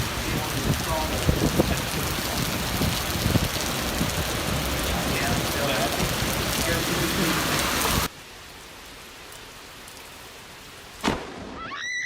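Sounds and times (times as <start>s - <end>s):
heavy rain pouring: 0.0s - 12.0s.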